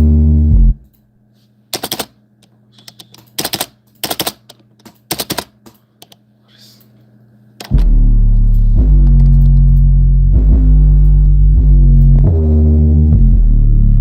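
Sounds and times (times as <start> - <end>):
computer keyboard keys clicking: 1.8 - 2.1, 2.8 - 6.2.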